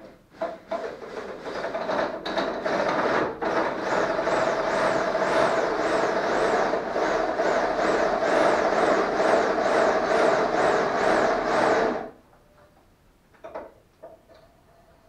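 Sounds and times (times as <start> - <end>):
drill bit knocking: 1.7 - 12.1.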